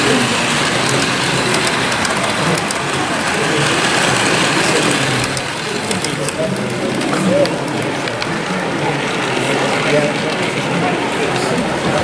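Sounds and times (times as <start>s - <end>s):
hall chatter: 0.0s - 12.0s
model train running: 0.0s - 12.0s
wheels clicking on track: 0.0s - 12.0s.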